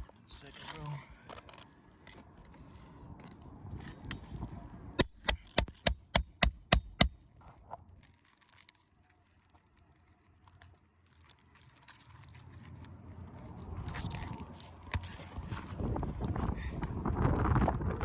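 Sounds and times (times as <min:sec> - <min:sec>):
hammer striking metal: 0:05.0 - 0:07.1
faint scrapes of shingles: 0:07.3 - 0:17.1.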